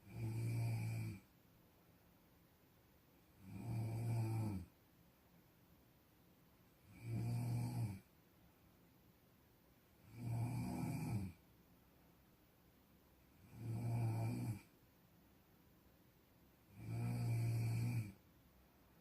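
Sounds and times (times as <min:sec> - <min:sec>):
low-pitched snoring: 0:00.0 - 0:01.3, 0:03.4 - 0:04.7, 0:06.8 - 0:08.1, 0:10.0 - 0:11.4, 0:13.4 - 0:14.7, 0:16.7 - 0:18.2.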